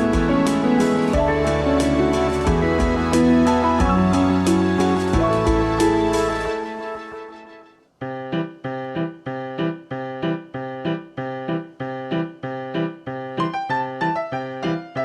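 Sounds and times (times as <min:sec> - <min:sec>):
piano repeated notes: 0:00.0 - 0:15.0.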